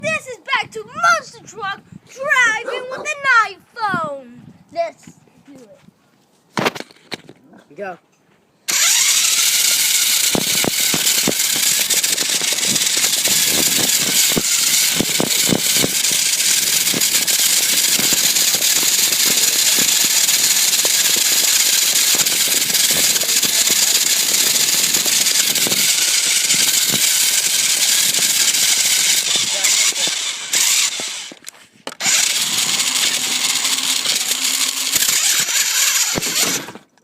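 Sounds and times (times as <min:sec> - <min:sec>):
rc truck motor whirring: 0:08.7 - 0:37.0.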